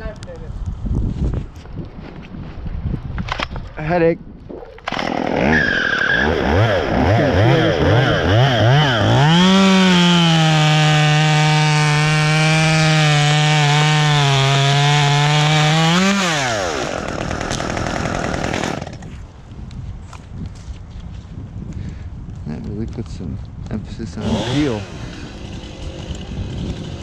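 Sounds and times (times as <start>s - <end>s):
small motor revving: 4.9s - 19.0s, 24.2s - 27.0s.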